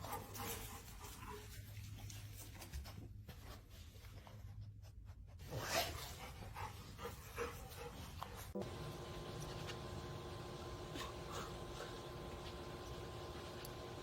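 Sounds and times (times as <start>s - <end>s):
dog panting: 0.0s - 2.0s, 4.4s - 8.6s
small scuffing noises: 0.1s - 4.5s.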